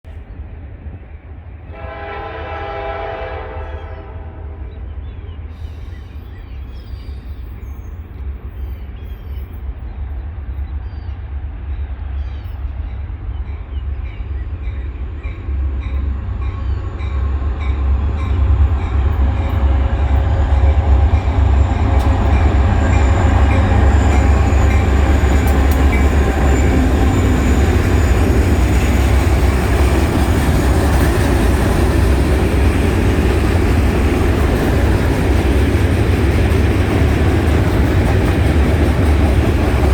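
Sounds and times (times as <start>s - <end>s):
diesel locomotive engine rumble: 0.0s - 39.9s
train wheels on rails: 4.6s - 39.9s.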